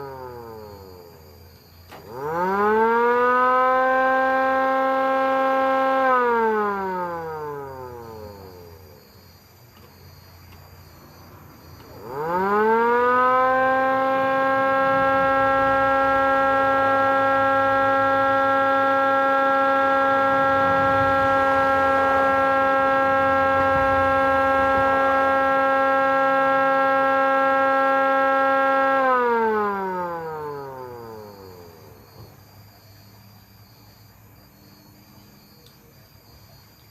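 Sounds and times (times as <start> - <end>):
siren rising and falling: 2.0 - 9.1, 11.7 - 32.4.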